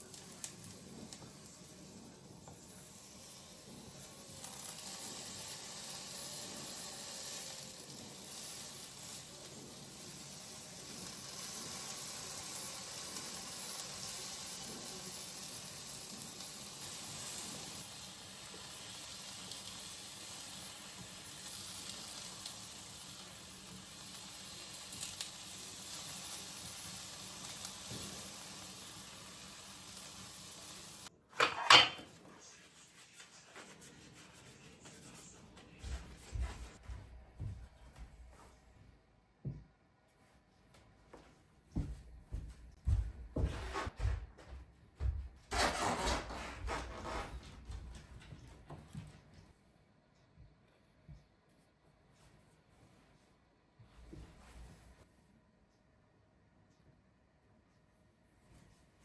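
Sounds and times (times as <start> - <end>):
steady sizzling hiss: 0.0 - 36.8.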